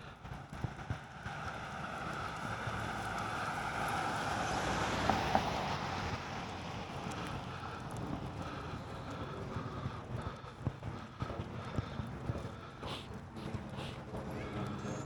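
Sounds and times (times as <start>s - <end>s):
vehicle tyres hissing on wet road: 0.8s - 9.8s.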